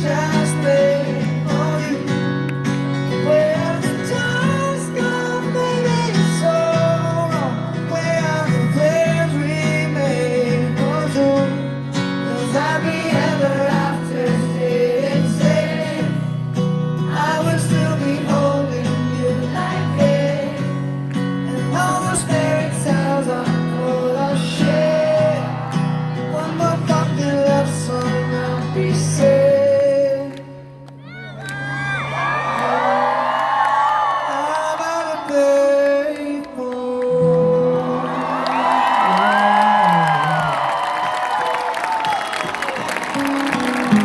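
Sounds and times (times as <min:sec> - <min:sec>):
person singing: 0:21.5 - 0:31.1, 0:34.2 - 0:40.6
electric guitar: 0:36.4 - 0:44.0.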